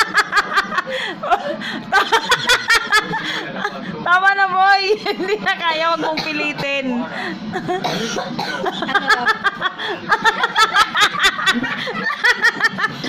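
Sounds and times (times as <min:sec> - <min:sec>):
people laughing: 0:00.0 - 0:04.0, 0:07.1 - 0:13.0.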